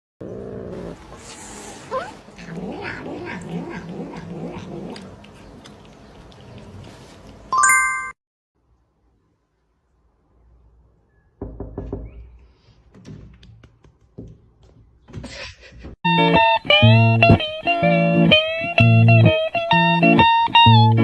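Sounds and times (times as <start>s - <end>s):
knocks and thuds: 11.4s - 16.0s
electric guitar music: 16.1s - 21.0s.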